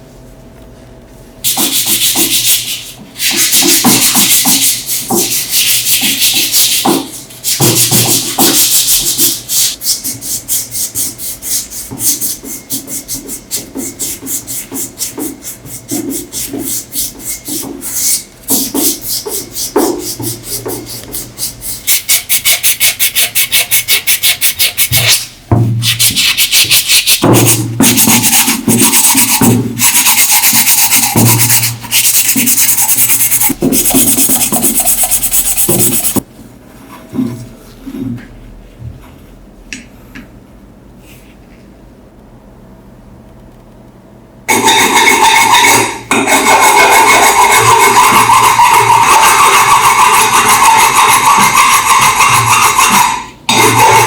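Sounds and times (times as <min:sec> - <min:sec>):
abrasive rubbing on metal: 0:25.8 - 0:36.2, 0:44.5 - 0:54.0.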